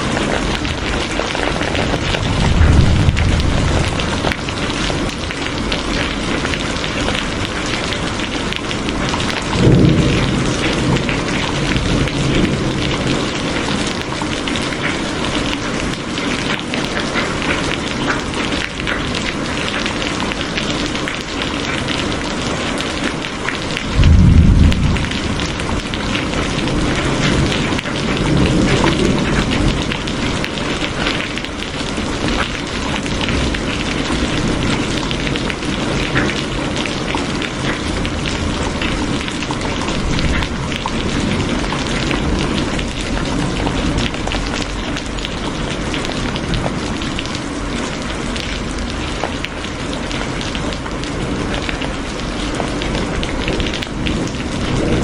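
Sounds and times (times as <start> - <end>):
thunder rumbling: 0.0 - 16.0, 22.8 - 47.3
dense rainfall hissing: 0.0 - 55.0.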